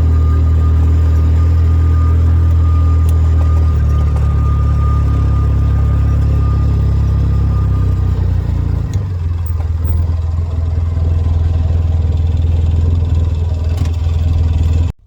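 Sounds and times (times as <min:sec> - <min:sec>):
atv engine running: 0:00.0 - 0:14.9
gear click: 0:02.4 - 0:05.4.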